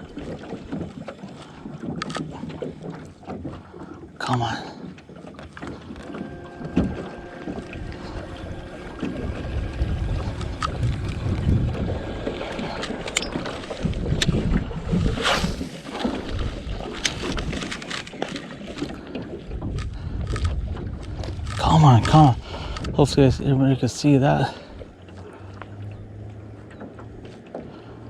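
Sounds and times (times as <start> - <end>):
sharp clicks and knocks: 5.4 - 11.5, 12.5 - 14.4
wind buffeting microphone: 5.6 - 28.0.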